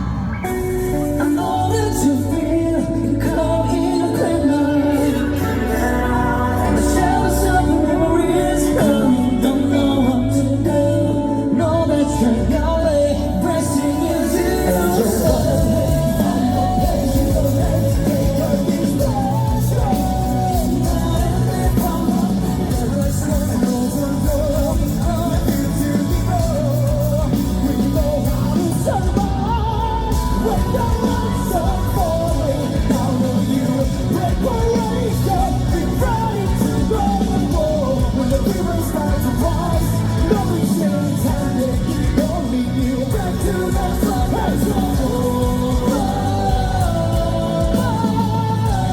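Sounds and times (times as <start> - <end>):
bass guitar: 0.0 - 48.9
electric guitars: 0.0 - 48.9
loud drums: 13.1 - 48.9.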